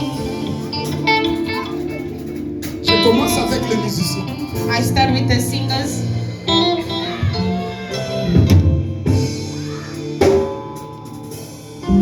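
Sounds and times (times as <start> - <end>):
live band playing: 0.0 - 12.0
strong drum hits: 8.4 - 10.9.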